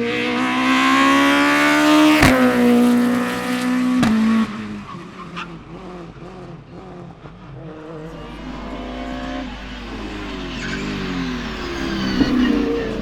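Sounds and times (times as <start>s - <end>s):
distant race car revving: 0.0s - 13.0s
low engine rumble: 7.8s - 13.0s.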